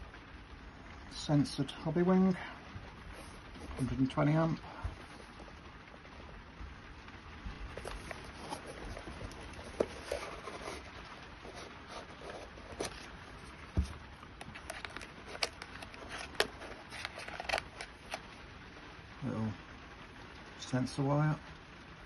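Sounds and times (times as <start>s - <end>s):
rustling: 2.4s - 6.1s, 7.5s - 18.5s.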